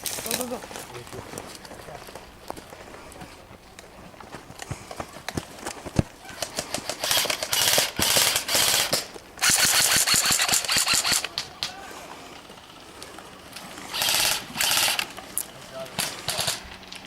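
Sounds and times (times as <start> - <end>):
airsoft gun automatic bursts: 6.3 - 17.0
airsoft gun single shots: 7.0 - 11.5.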